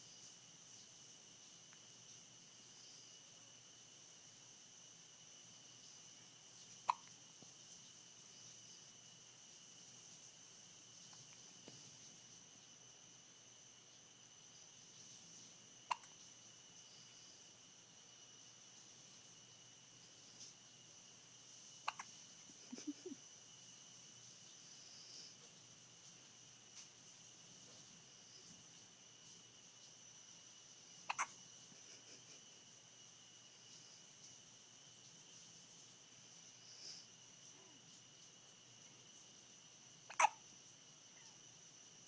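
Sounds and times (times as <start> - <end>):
person hiccuping: 31.1 - 31.3, 40.1 - 40.4.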